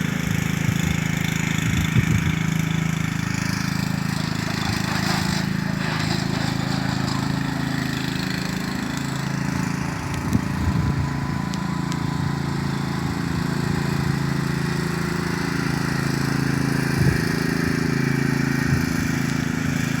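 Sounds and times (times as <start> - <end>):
lawn mower engine running: 0.0 - 20.0.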